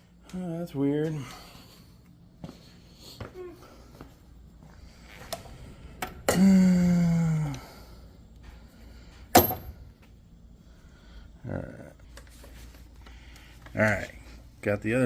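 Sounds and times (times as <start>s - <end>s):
sharp metallic clank: 9.3s - 9.8s.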